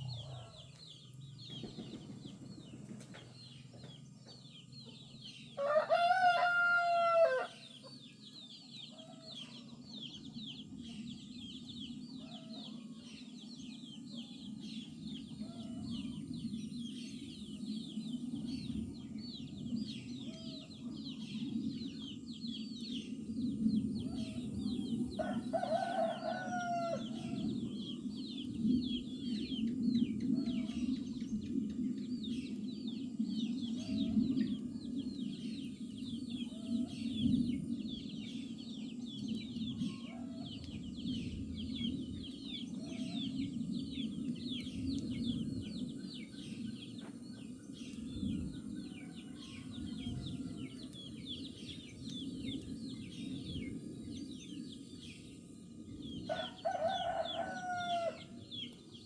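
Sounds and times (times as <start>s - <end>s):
small birds chirping: 0.0s - 59.0s
rooster crowing: 5.6s - 7.6s, 25.2s - 27.6s, 56.3s - 58.4s.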